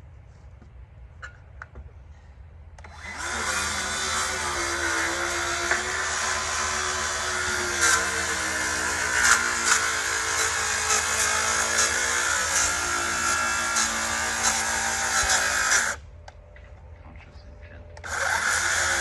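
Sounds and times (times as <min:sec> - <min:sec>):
power tool motor whine: 0:02.8 - 0:16.0, 0:18.0 - 0:19.0.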